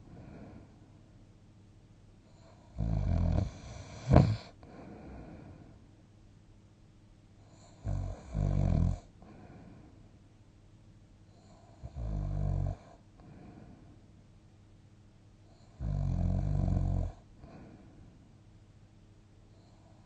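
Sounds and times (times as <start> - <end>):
quiet breathing: 0.0 - 1.3, 2.2 - 6.0, 7.4 - 10.3, 11.2 - 14.2, 15.4 - 18.5, 19.4 - 20.0
person snoring: 2.4 - 5.6
sharp snort: 3.4 - 4.5.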